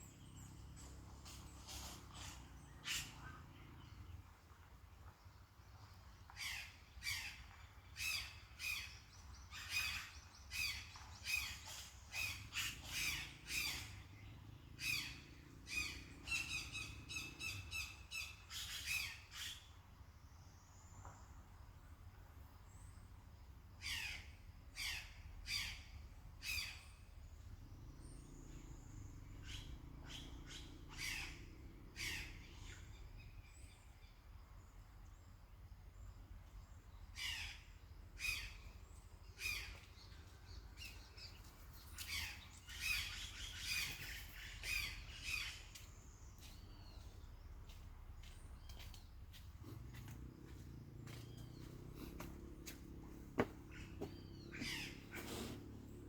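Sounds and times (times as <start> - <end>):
birds calling sharply: 0.0 - 4.2, 6.3 - 19.8, 23.8 - 34.1, 36.9 - 56.0.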